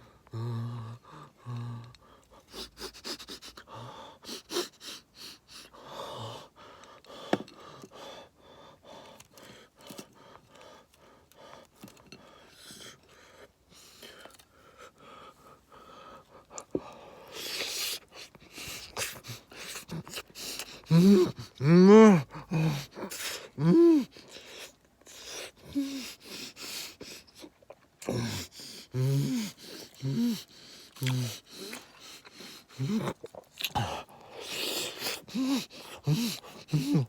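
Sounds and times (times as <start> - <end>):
breathing: 5.0 - 19.8
person humming mmm: 20.8 - 24.2, 32.7 - 37.0
person chewing food: 29.2 - 37.0.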